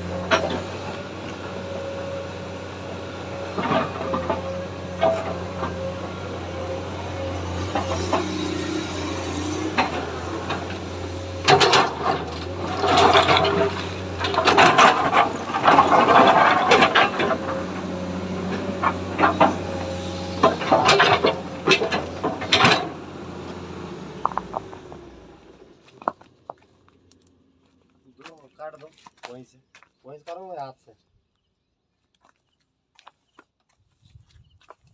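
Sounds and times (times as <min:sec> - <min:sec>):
excavator diesel engine humming: 0:00.0 - 0:28.6
bucket rushing and scraping: 0:11.4 - 0:17.8.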